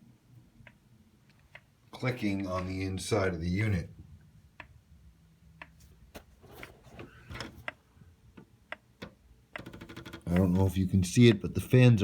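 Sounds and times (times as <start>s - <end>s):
faint clicking inside amplifier: 0.3s - 2.8s, 3.9s - 4.9s, 5.5s - 11.6s.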